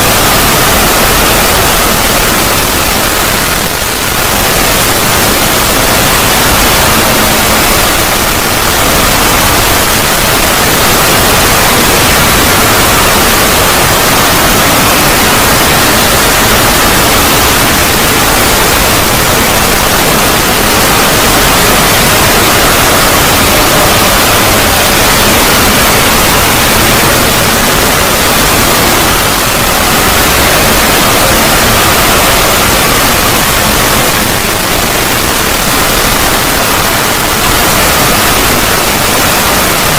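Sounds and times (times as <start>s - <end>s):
static hiss: 0.0s - 39.9s.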